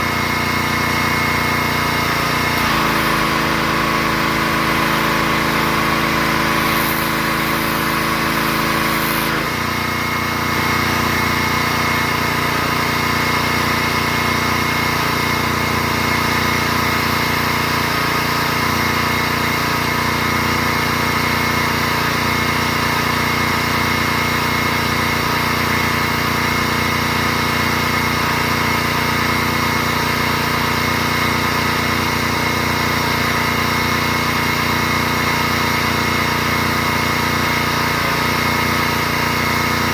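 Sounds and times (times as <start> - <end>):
pressure washer motor droning: 0.0 - 39.9
pressure washer hiss: 0.1 - 15.4.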